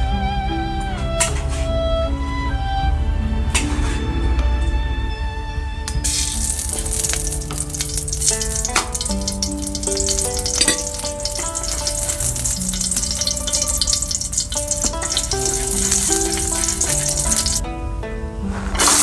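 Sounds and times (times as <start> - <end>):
calm background music: 0.0 - 19.0
food sizzling in a pan: 6.0 - 17.6, 18.8 - 19.0.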